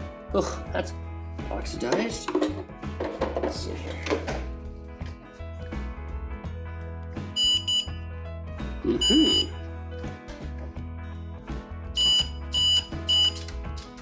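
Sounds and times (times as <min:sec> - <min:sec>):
background music: 0:00.0 - 0:14.0
circuit tester beeping: 0:07.4 - 0:07.9, 0:09.0 - 0:09.6, 0:12.0 - 0:13.4.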